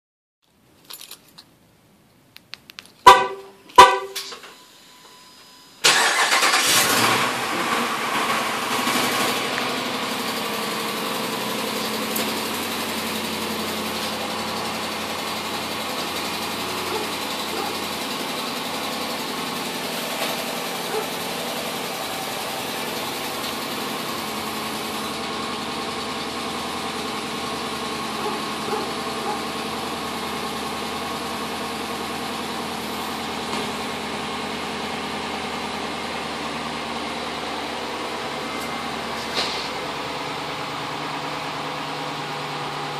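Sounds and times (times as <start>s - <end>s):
car horn chirps: 3.0s - 5.8s
car engine starting and idling: 3.0s - 42.9s
engine ticking: 5.8s - 42.9s.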